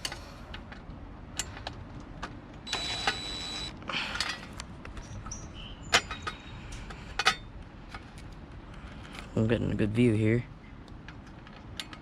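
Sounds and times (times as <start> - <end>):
power drill whining: 2.7 - 3.7.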